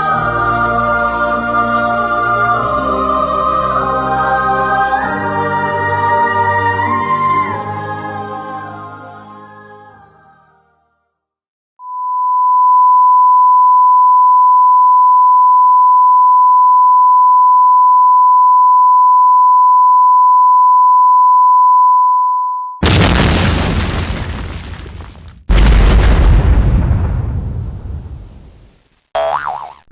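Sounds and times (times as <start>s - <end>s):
steady beep tone: 11.8s - 22.8s
loud explosion-like boom: 22.8s - 28.6s.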